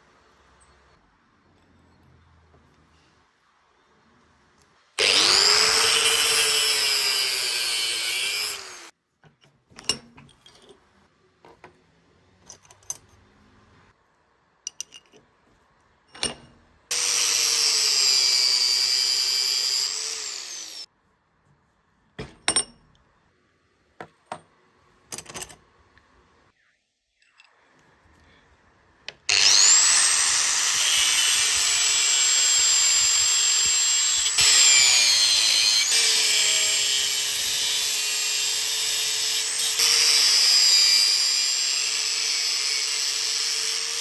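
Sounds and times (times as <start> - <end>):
electric power tool on steel: 5.0 - 8.9, 16.9 - 20.9, 29.3 - 44.0.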